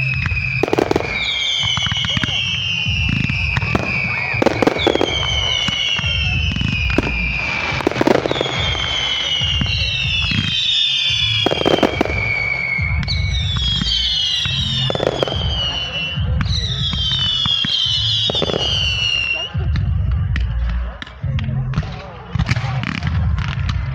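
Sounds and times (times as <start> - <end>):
fireworks bangs and pops: 0.0 - 23.9
high whistling fireworks: 0.0 - 23.9
low rumble: 2.8 - 10.5.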